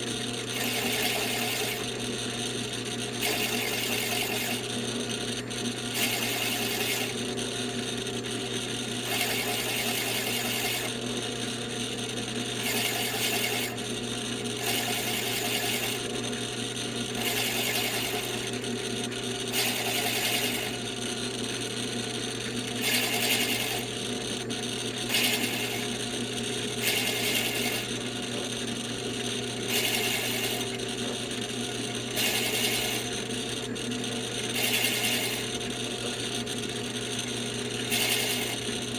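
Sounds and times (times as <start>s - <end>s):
drill cutter rasping into wood: 0.0s - 7.5s, 8.6s - 11.0s, 12.4s - 16.2s, 17.0s - 20.9s, 22.2s - 28.5s, 29.5s - 31.2s, 31.9s - 33.6s, 34.3s - 35.6s, 37.2s - 38.9s
drill motor hum: 0.0s - 38.9s.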